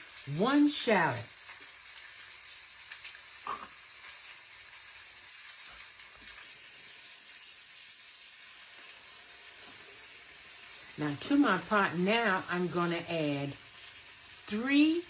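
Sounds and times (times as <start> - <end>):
food sizzling in a pot: 0.0 - 15.0.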